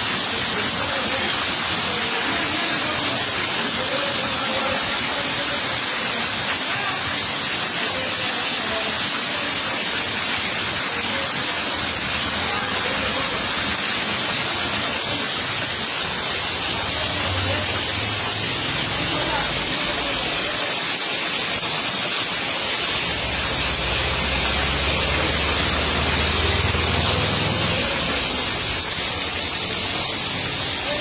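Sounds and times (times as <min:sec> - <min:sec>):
heavy rain: 0:00.0 - 0:31.0.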